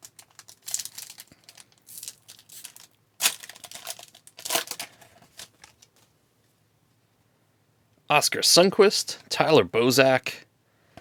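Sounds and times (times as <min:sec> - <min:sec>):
wrapper crinkling and tearing: 0:00.0 - 0:06.0.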